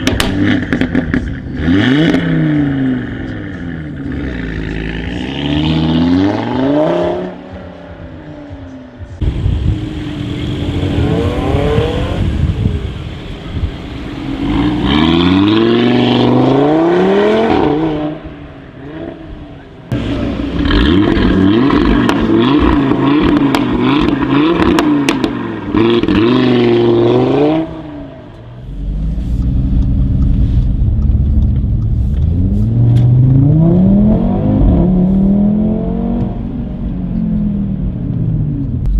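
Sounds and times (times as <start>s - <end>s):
car engine revving: 0.0s - 38.9s
exhaust crackles: 18.1s - 38.9s.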